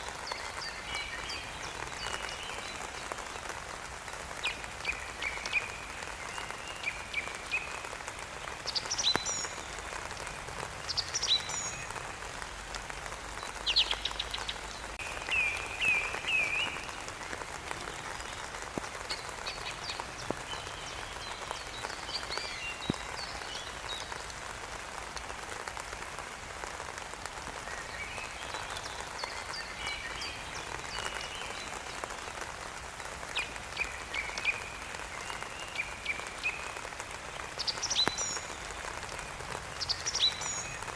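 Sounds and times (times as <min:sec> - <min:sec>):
small birds chirping: 0:00.0 - 0:24.6, 0:33.2 - 0:40.9
steady rain falling: 0:00.0 - 0:40.9.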